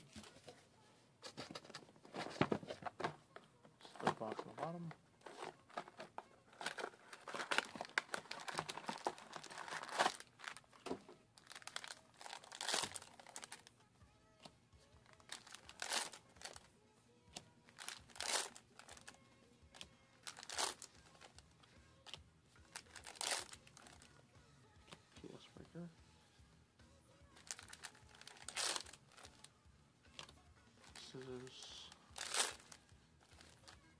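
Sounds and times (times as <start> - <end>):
foil wrappers crinkling and tearing: 3.9 - 13.7, 15.2 - 16.6, 17.8 - 19.2, 20.2 - 21.4, 22.7 - 24.0, 27.4 - 29.5, 30.2 - 33.8.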